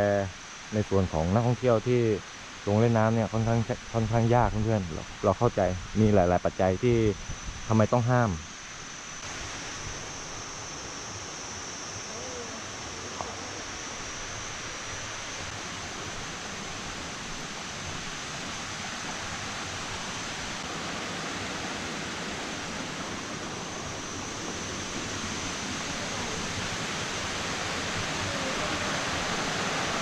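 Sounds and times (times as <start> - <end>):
waterfall rushing: 15.4 - 30.0.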